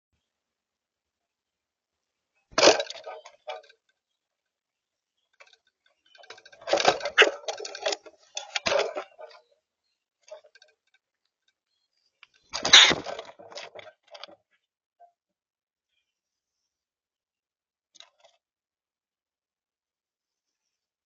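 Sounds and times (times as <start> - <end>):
grackle calling: 12.6 - 13.4.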